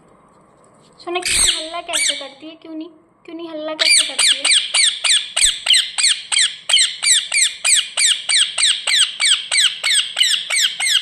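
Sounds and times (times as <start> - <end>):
parrot shrill calls: 1.2 - 2.4, 3.8 - 11.0.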